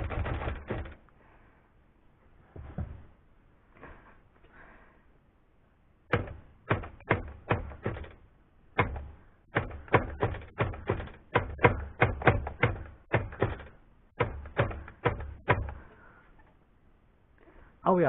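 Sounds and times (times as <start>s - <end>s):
typewriter keystrokes: 9.6s - 15.7s.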